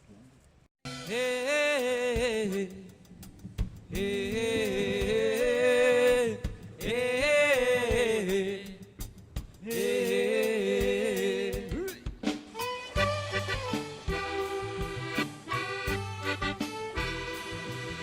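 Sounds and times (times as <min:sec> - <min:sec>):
person singing in song: 0:03.9 - 0:08.6.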